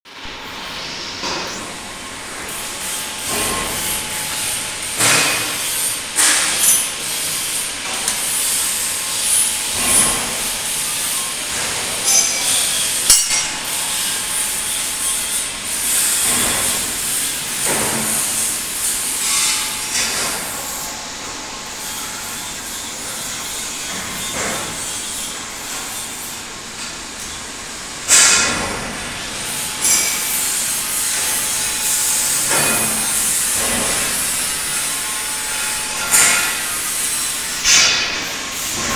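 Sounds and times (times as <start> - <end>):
welding arc crackling hiss: 0.2 - 27.3.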